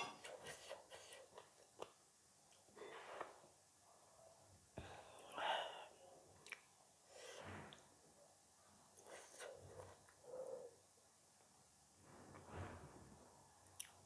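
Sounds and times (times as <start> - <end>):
soft breathy sniffs: 2.8 - 3.5, 7.1 - 7.8, 9.0 - 10.8.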